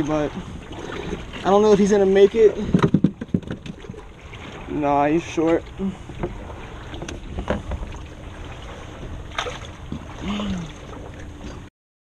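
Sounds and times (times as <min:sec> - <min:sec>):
water moving around kayak: 0:00.0 - 0:11.7
sharp knocks: 0:02.7 - 0:03.8.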